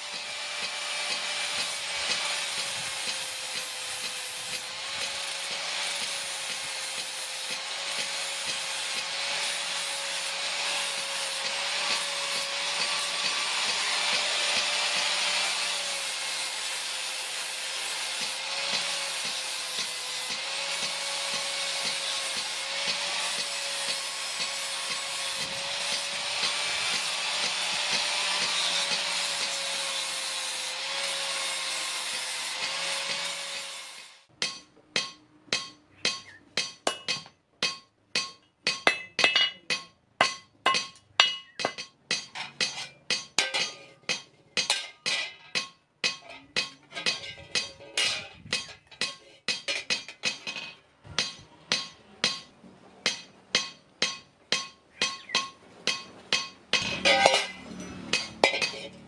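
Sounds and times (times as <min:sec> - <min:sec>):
angle grinder grinding steel: 0:00.0 - 0:34.6, 0:55.0 - 0:59.0
hammer striking hot steel: 0:00.0 - 0:59.0.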